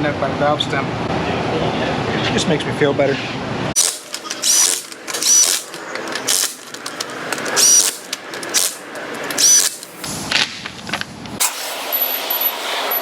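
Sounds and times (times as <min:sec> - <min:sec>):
power tool whining: 0:03.8 - 0:10.0.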